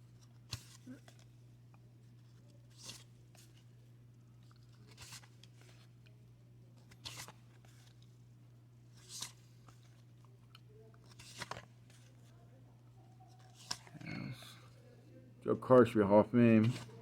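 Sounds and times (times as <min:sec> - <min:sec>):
faint low hum: 0:00.0 - 0:17.0
papery swishes of cards sliding: 0:16.6 - 0:17.0.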